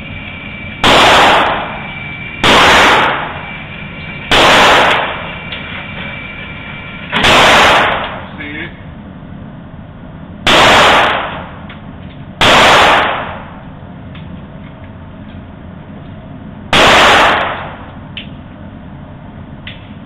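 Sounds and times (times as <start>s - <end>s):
loud gunshots with echo: 0.8s - 3.6s, 4.2s - 5.4s, 7.1s - 8.3s, 10.4s - 11.6s, 12.4s - 13.6s, 16.7s - 17.9s.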